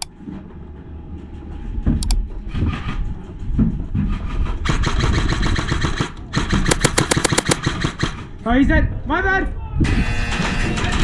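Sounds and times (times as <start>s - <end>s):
sharp click: 2.0s - 2.2s, 6.6s - 7.7s
airsoft gunfire rattle: 6.4s - 8.1s.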